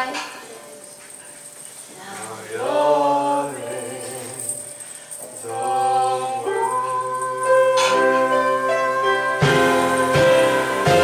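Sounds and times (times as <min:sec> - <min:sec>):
duet singing show tune: 0:02.0 - 0:04.6, 0:05.4 - 0:11.0
musical accompaniment: 0:05.4 - 0:11.0.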